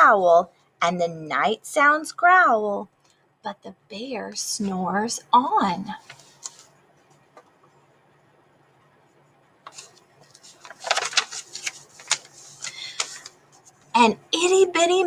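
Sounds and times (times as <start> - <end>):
book page turning: 6.0 - 6.7, 9.7 - 13.9.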